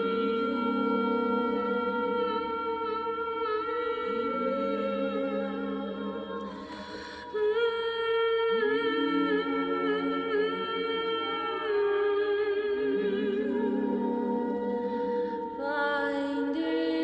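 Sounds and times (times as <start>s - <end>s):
soprano voice singing with vibrato: 0.0s - 17.0s.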